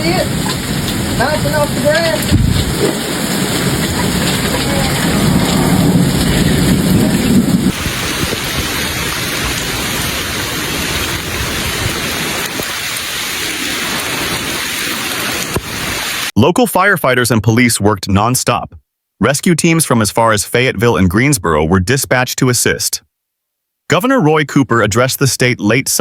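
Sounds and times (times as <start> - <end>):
low rumble: 0.0 - 14.3
heavy rain pouring: 0.0 - 16.3.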